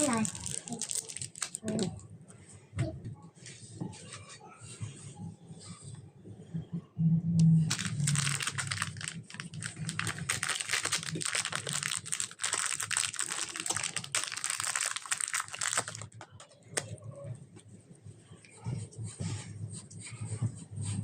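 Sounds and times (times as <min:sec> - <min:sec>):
slime crackling and popping: 0:00.0 - 0:01.9, 0:07.6 - 0:17.0.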